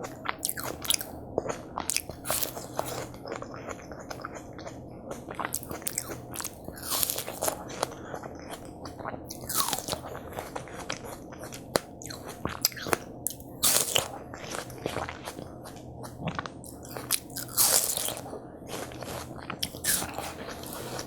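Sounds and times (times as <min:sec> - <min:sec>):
biting and chewing watermelon: 0:00.0 - 0:21.0.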